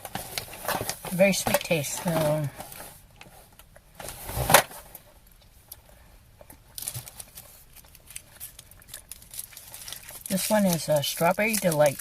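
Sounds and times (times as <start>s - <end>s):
cellophane wrapper crinkling: 6.4s - 12.0s.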